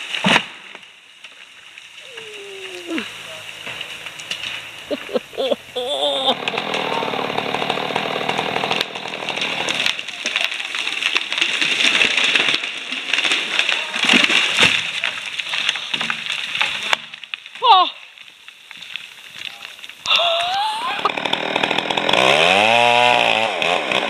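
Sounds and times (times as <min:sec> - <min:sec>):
chainsaw cutting wood: 0:02.6 - 0:14.9, 0:20.5 - 0:24.0.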